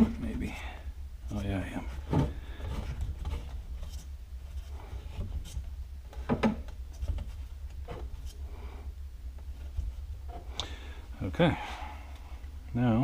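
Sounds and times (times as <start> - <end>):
rubbing and scraping on metal: 0.0 - 8.8
steady low hum: 0.0 - 13.0.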